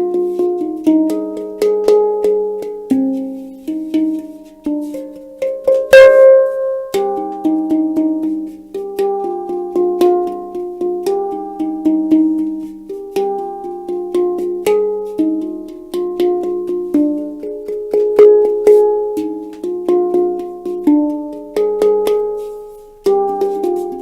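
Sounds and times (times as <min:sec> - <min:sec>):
handpan notes ringing: 0:00.0 - 0:24.0
low sustained handpan note: 0:00.0 - 0:24.0.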